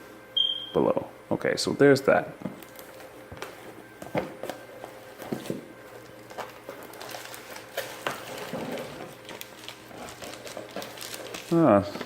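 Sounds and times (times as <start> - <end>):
packaging taps clicks and rustles: 2.6 - 12.0.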